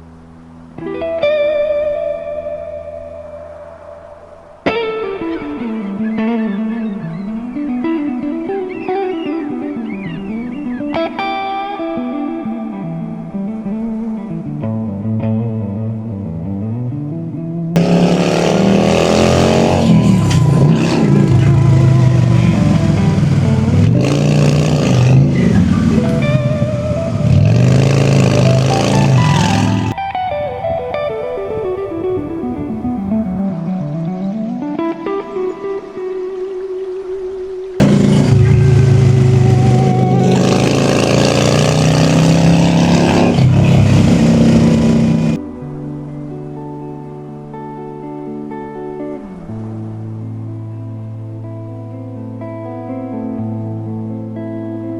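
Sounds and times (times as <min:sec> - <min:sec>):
motorcycle engine accelerating: 0:17.8 - 0:33.4, 0:37.8 - 0:45.4.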